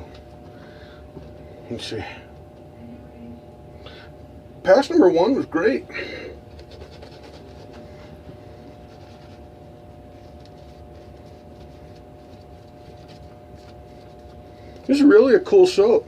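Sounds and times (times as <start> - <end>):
steady thin hum: 0.0 - 16.0
razor scraping stubble: 8.8 - 15.0.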